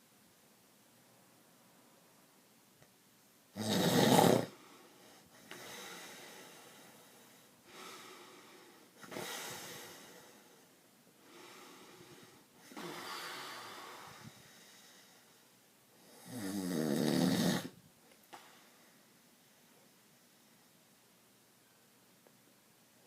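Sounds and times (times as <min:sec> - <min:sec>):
person snoring: 0:03.6 - 0:04.6, 0:16.0 - 0:17.8.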